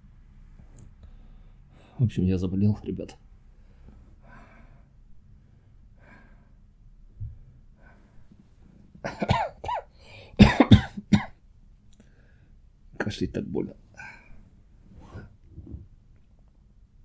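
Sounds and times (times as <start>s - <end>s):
faint breaths: 0.6s - 2.1s, 3.5s - 8.9s, 9.9s - 10.4s, 12.0s - 12.7s, 13.9s - 15.9s
man coughing: 9.0s - 11.4s.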